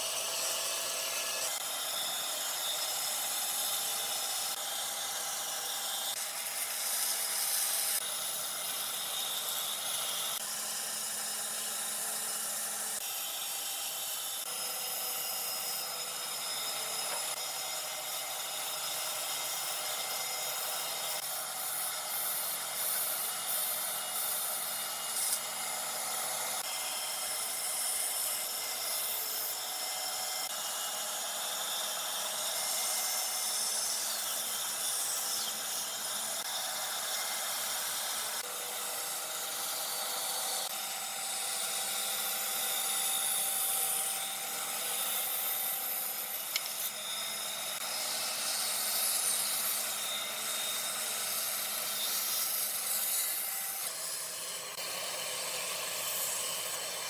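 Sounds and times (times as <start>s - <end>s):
power tool cutting wood: 0.0s - 57.0s.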